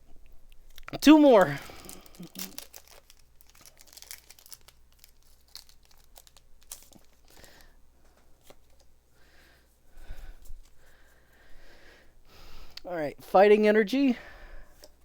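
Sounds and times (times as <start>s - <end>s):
foil wrapper tearing and crinkling: 1.7s - 7.7s.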